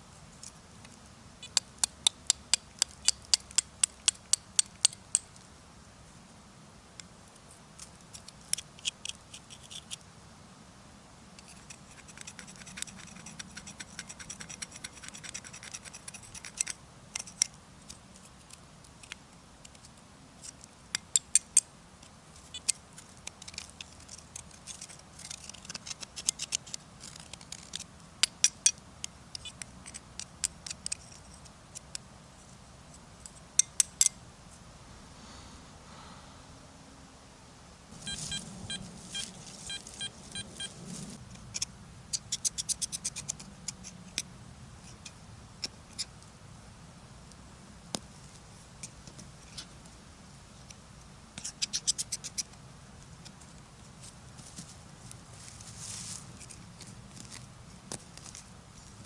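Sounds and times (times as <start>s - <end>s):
sharp scratching and clicking: 11.4s - 21.6s, 22.4s - 28.6s, 41.0s - 46.1s.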